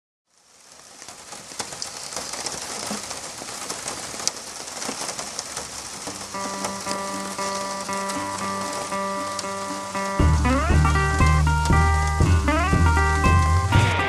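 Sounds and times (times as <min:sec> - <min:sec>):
crackling hiss with small clicks: 0:00.3 - 0:13.8
music with steady notes: 0:06.4 - 0:14.0.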